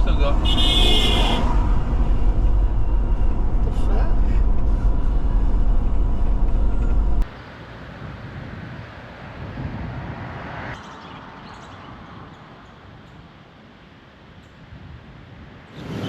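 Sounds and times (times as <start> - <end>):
car rumble inside cabin: 0.0 - 7.3.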